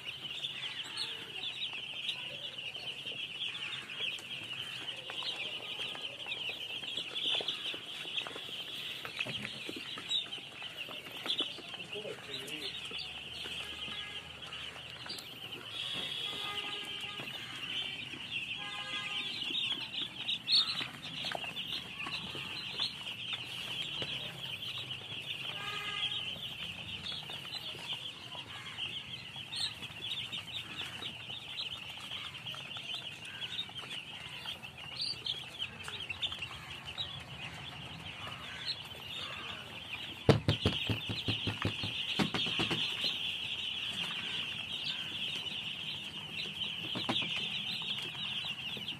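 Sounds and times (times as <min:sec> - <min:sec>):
baby chicks peeping: 0:00.0 - 0:48.9
knocks or thumps: 0:40.2 - 0:43.1.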